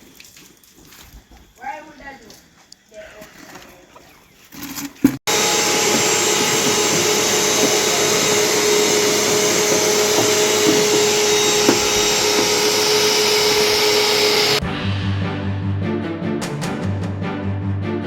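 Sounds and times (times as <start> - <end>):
blower running: 5.3 - 14.6.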